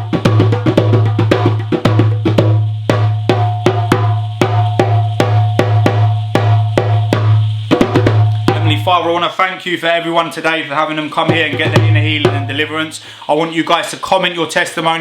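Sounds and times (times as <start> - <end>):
sharp drum strikes: 0.0 - 9.2, 11.1 - 12.9.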